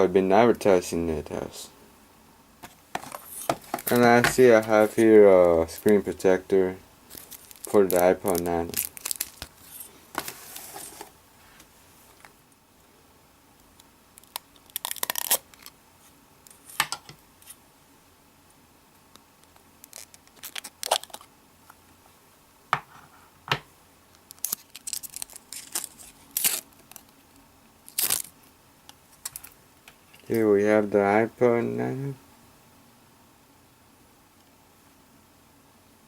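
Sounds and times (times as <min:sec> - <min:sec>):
plastic packaging tearing and crinkling: 0:07.1 - 0:11.1, 0:14.2 - 0:15.7, 0:19.8 - 0:21.3, 0:24.3 - 0:27.2, 0:27.8 - 0:28.5.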